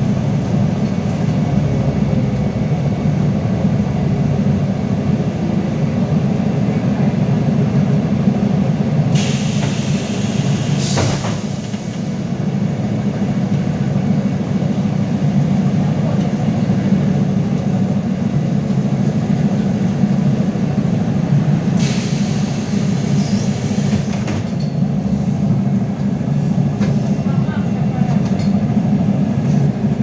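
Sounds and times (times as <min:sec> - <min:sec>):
trolleybus running rumble: 0:00.0 - 0:30.0
burst of hiss: 0:09.2 - 0:12.0.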